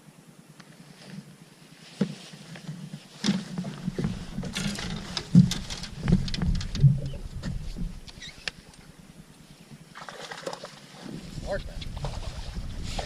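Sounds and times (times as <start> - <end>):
knocks and thumps aboard a boat: 2.0 - 8.5
low rumble: 3.8 - 9.4, 11.2 - 13.0.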